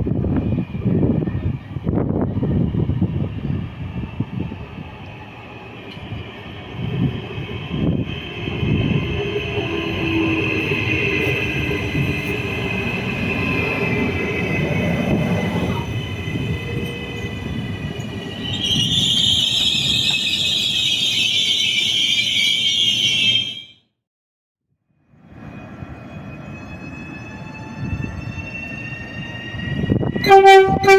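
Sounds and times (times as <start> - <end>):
train rumbling: 0.0 - 23.7, 25.2 - 30.9
train wheels screeching: 5.2 - 23.8.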